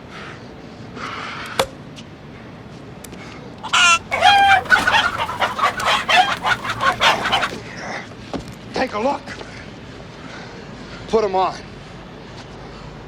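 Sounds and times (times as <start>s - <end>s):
cartoon chicken squawking and clucking: 3.6s - 7.6s.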